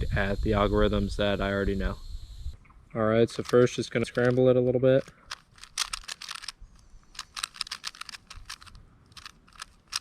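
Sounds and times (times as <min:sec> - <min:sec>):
puzzle cube plastic clicks: 0:03.4 - 0:04.4, 0:05.0 - 0:10.0.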